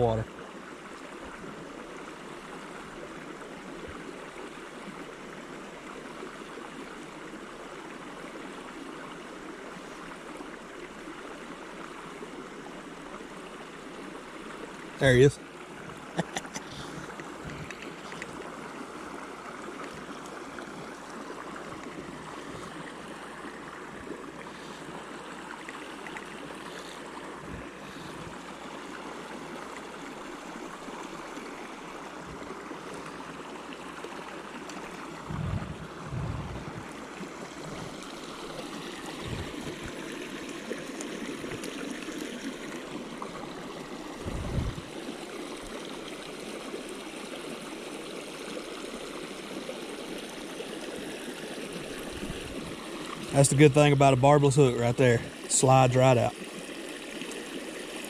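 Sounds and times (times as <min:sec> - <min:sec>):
creek water rushing over rocks: 0:00.0 - 0:58.0
short low bumps: 0:35.2 - 0:36.9.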